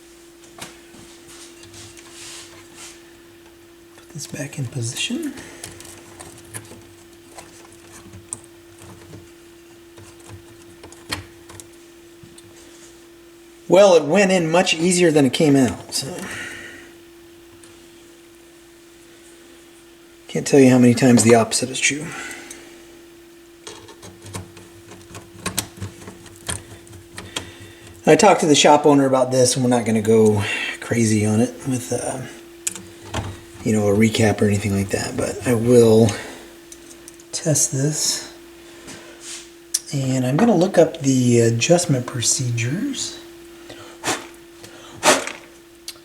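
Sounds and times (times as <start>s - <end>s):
steady low hum: 0.0s - 46.0s
small clicks and knocks: 5.6s - 9.3s, 10.0s - 12.6s, 23.6s - 28.0s
clicks and taps of tools: 23.6s - 28.0s, 32.7s - 33.4s.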